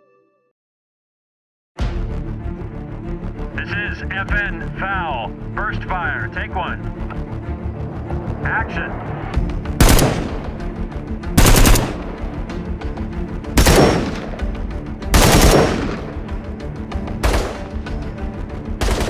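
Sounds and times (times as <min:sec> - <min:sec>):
background music: 0:01.8 - 0:19.0
automatic gunfire bursts: 0:09.8 - 0:10.3, 0:11.4 - 0:12.0, 0:13.6 - 0:14.4, 0:15.2 - 0:16.3, 0:17.2 - 0:17.8, 0:18.8 - 0:19.0.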